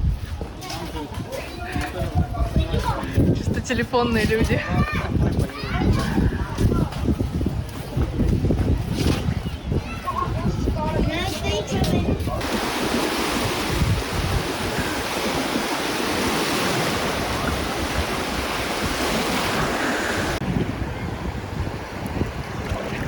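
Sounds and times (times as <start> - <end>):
wind buffeting microphone: 0.0 - 23.0
sea surf washing in: 12.4 - 23.0.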